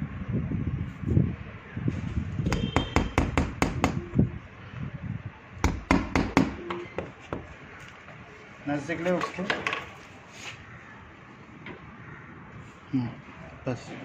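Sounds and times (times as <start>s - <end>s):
sharp knocks: 5.6s - 7.5s.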